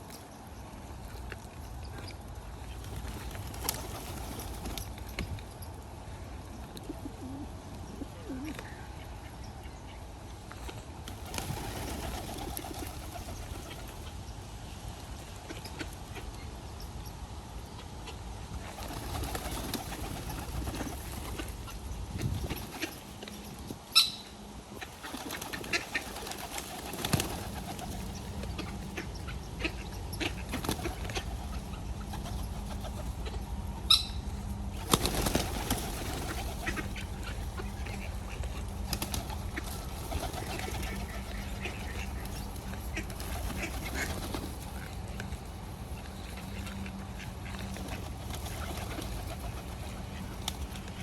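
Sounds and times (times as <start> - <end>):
pigeons flapping wings: 2.7 - 5.2, 11.0 - 14.1, 18.6 - 23.1, 24.9 - 28.9, 30.4 - 33.2, 34.7 - 46.7, 47.5 - 51.0.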